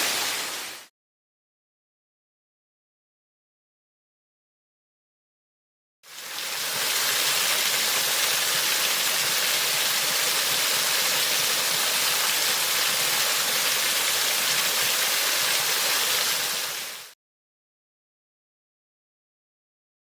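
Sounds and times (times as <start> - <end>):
waterfall rushing: 0.0 - 0.9, 6.1 - 17.1.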